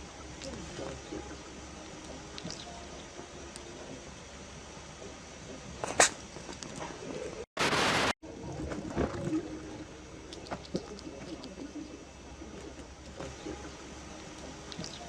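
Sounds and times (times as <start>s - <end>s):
hedgehog hissing puff: 5.8s - 6.2s
hedgehog sneezing: 5.8s - 6.2s.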